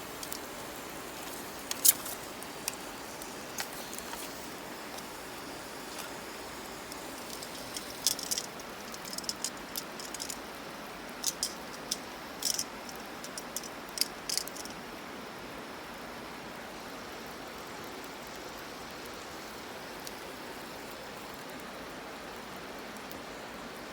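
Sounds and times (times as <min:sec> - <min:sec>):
wood fire crackling and popping: 0:00.0 - 0:14.8.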